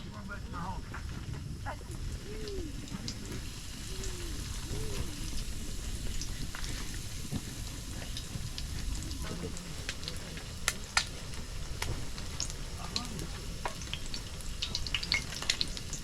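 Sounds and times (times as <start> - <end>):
small pops and crackles: 0.9 - 16.0
fish frying in oil: 1.5 - 16.0.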